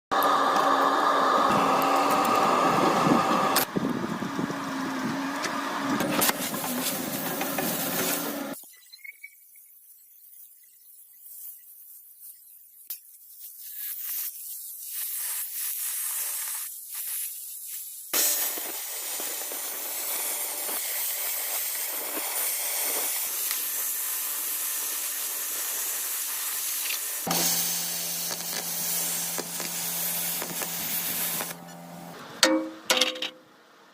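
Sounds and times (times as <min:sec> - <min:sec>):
crackling noise: 0:06.5 - 0:32.3
metal cutting hiss: 0:10.3 - 0:32.1
machine running: 0:27.2 - 0:32.2.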